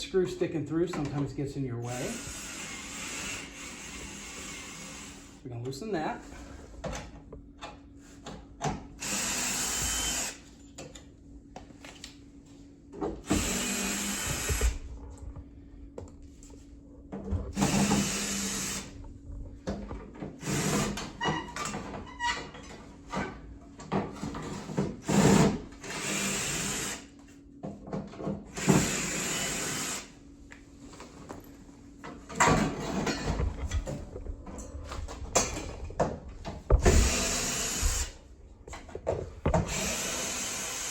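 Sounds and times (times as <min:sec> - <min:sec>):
power drill running in bursts: 0:01.8 - 0:05.4, 0:09.0 - 0:10.5, 0:13.3 - 0:14.8, 0:17.6 - 0:18.9, 0:20.4 - 0:21.1, 0:25.0 - 0:27.1, 0:28.5 - 0:30.1, 0:36.8 - 0:38.2, 0:39.7 - 0:40.9.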